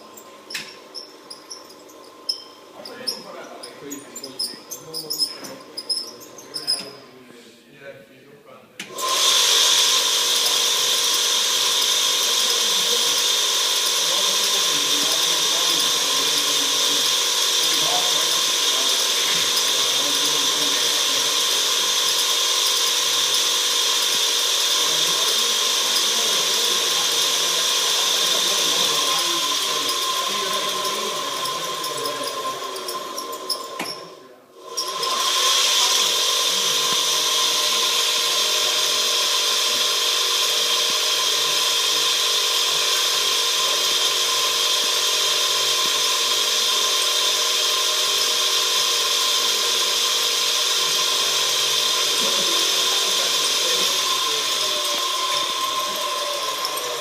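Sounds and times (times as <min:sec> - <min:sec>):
small electric motor whirring: 0:08.9 - 0:57.0.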